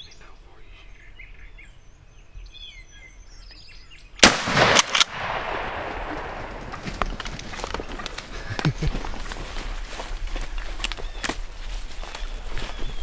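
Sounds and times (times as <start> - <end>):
songbirds chirping: 0.0 - 4.5, 5.2 - 13.0
shotgun blast echoing: 4.2 - 6.8.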